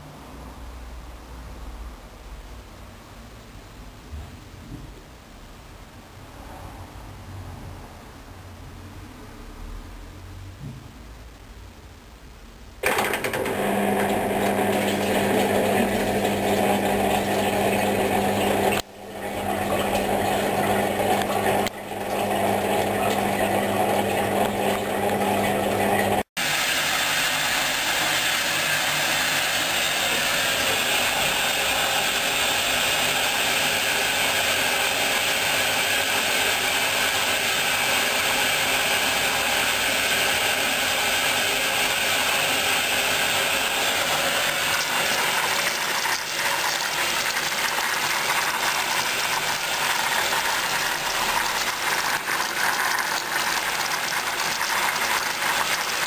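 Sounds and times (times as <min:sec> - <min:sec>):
washing machine running: 0:12.8 - 0:56.0.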